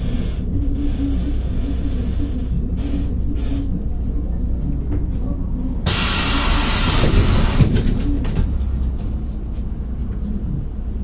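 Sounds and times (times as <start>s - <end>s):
diesel engine rumble: 0.0s - 11.0s
compressed air hiss: 5.9s - 7.7s.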